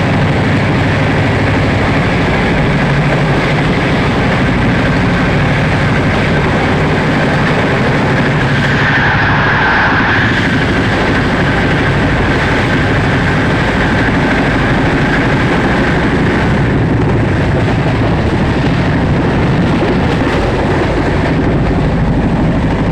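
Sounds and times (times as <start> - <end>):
high whine: 0.0 - 22.9
train wheels rushing on rail: 0.0 - 22.9.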